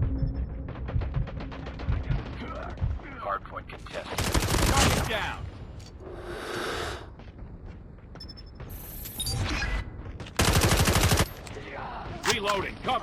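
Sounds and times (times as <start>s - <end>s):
video game gunshots: 4.1s - 5.4s.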